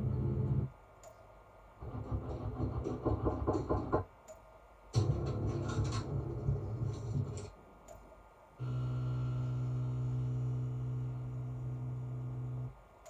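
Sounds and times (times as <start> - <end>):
low hum with overtones: 0.0 - 2.0, 4.9 - 13.0.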